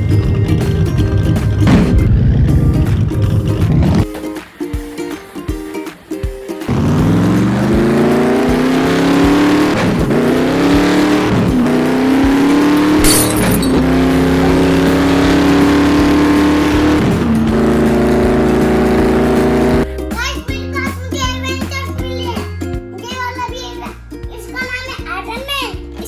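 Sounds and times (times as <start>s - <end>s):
race car engine: 0.0s - 4.0s, 6.7s - 19.9s.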